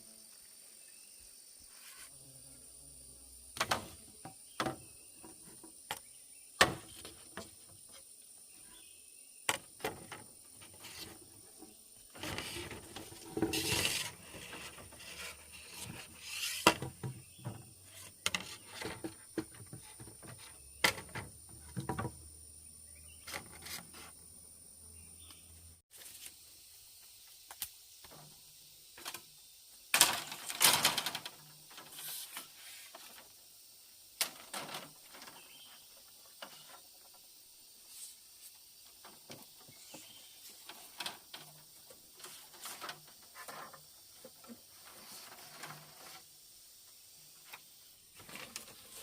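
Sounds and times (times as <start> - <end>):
scraping: 9.9 - 22.0.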